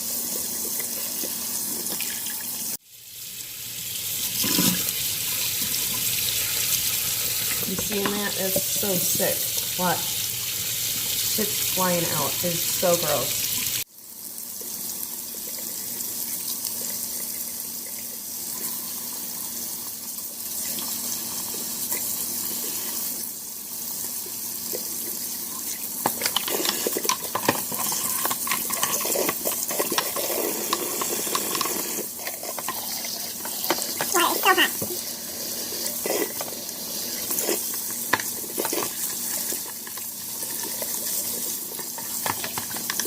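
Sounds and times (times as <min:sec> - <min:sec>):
tap water splashing in sink: 0:07.5 - 0:09.7, 0:41.8 - 0:43.0.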